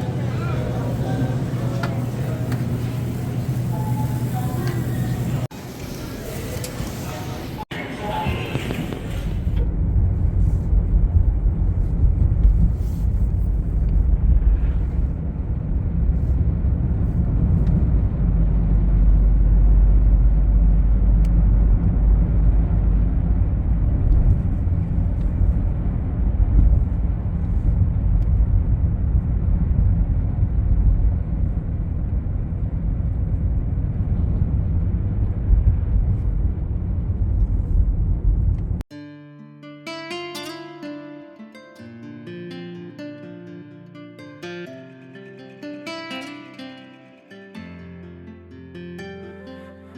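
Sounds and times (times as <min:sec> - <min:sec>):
car road and engine rumble: 0:00.0 - 0:38.9.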